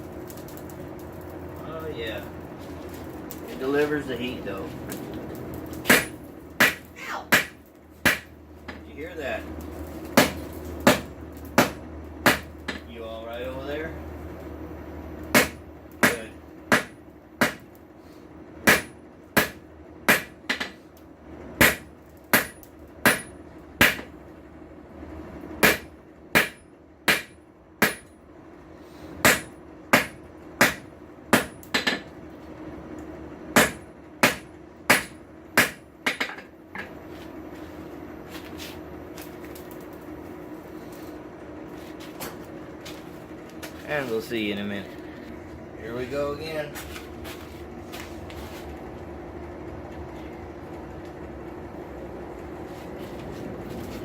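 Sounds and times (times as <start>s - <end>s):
steady low hum: 0.0s - 54.0s
hammer striking steel on anvil: 5.9s - 8.8s, 15.3s - 17.7s, 18.6s - 20.8s, 21.6s - 24.1s, 25.6s - 28.2s, 29.2s - 32.1s, 33.6s - 36.9s.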